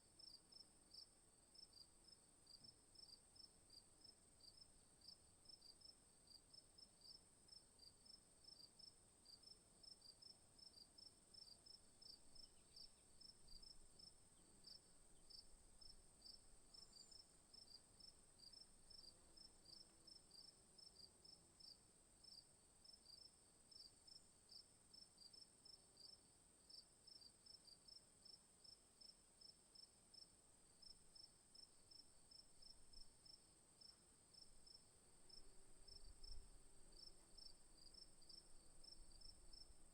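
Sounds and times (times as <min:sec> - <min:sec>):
crickets chirping: 0:07.5 - 0:24.6, 0:27.9 - 0:39.9.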